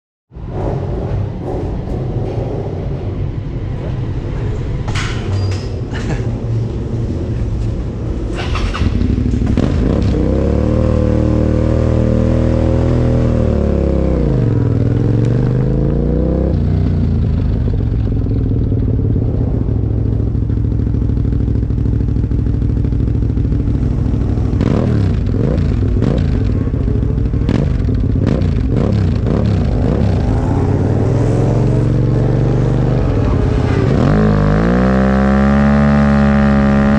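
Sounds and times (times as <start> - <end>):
motorcycle engine running and revving: 7.5 - 36.9.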